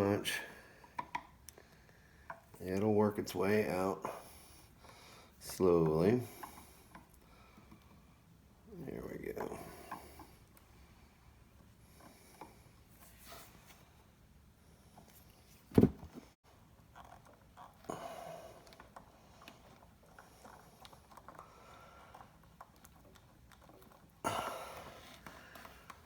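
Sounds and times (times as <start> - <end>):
rustling scrape: 12.9 - 14.0.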